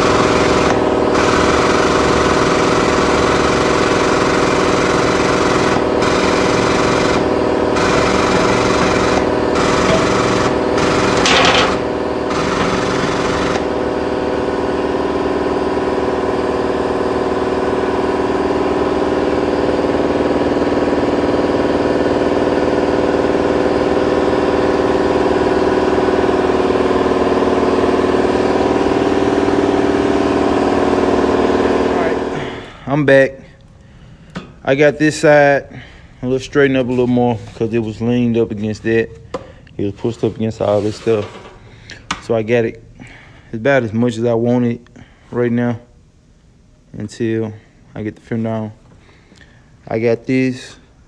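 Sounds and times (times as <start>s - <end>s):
machine running with pulsing hum: 0.0s - 32.8s.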